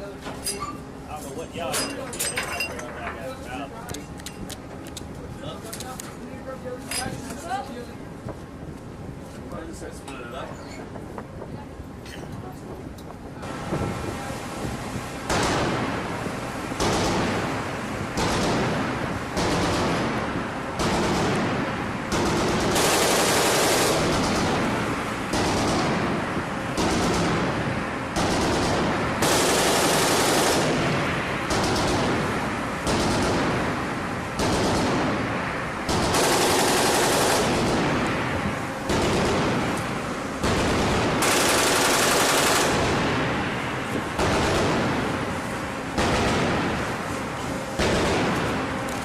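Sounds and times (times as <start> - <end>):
chain gun firing bursts: 22.1 - 24.7, 28.2 - 30.9, 32.8 - 33.6, 35.9 - 37.9, 40.4 - 42.9.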